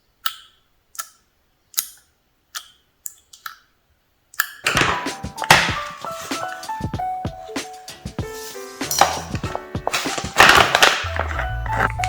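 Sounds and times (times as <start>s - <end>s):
music: 4.7s - 12.0s.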